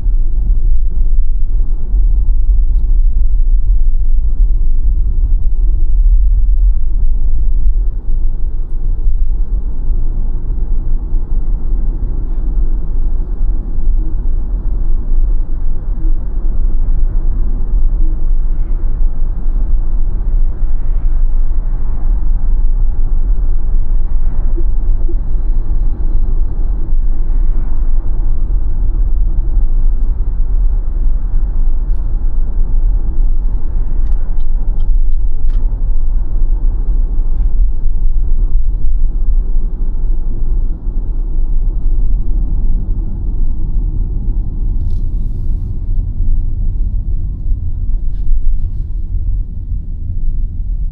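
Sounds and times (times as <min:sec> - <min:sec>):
road and tyre rumble: 0:00.0 - 0:50.9.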